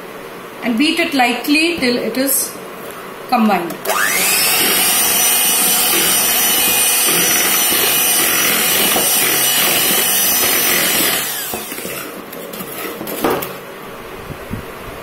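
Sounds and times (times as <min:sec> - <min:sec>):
electric hand blender whining: 0:03.9 - 0:13.6.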